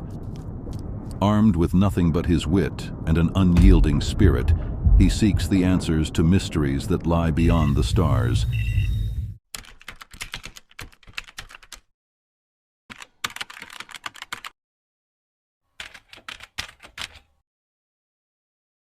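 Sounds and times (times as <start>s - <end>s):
rapid key clicks: 9.6s - 11.9s, 12.9s - 14.5s, 15.8s - 17.3s.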